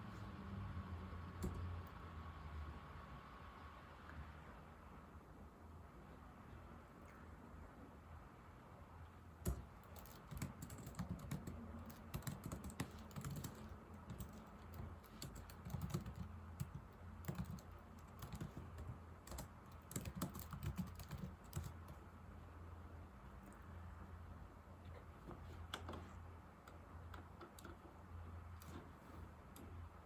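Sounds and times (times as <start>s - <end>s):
laptop keyboard typing: 1.3s - 2.0s, 9.4s - 22.1s, 26.7s - 29.8s.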